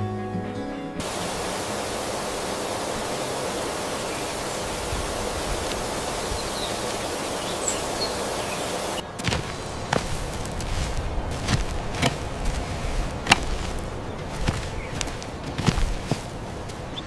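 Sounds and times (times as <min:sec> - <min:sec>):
faint high chirps: 0:00.0 - 0:09.9
steady rushing noise: 0:00.9 - 0:17.0.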